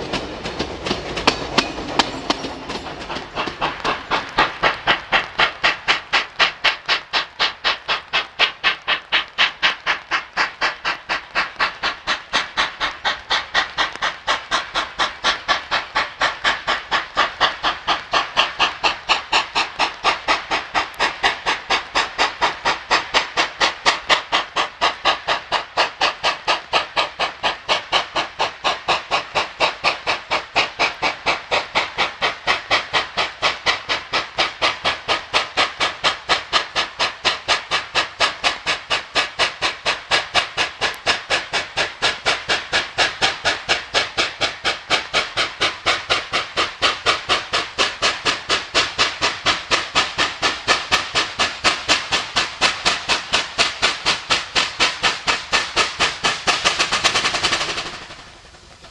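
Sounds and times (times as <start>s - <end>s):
steam locomotive chuffing: 0.0s - 58.9s.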